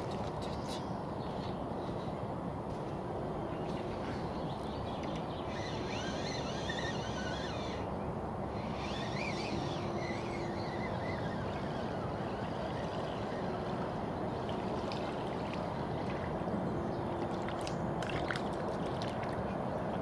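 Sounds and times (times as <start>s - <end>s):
songbird warbling: 3.7s - 7.8s, 8.6s - 14.4s.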